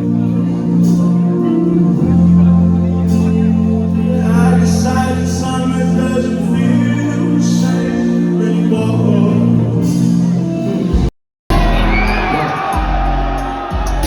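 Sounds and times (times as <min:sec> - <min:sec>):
loud music with deep bass: 0:00.0 - 0:14.0
person singing: 0:11.5 - 0:14.0.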